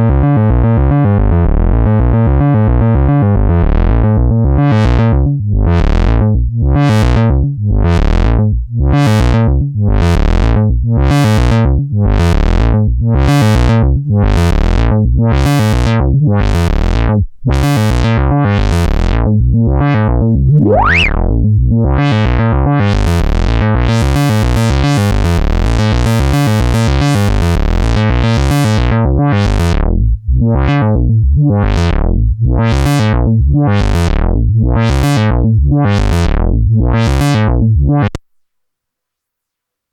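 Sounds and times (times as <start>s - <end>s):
synthesizer bass note: 20.3s - 21.6s
resonant synth whistle gliding upward: 20.5s - 21.3s.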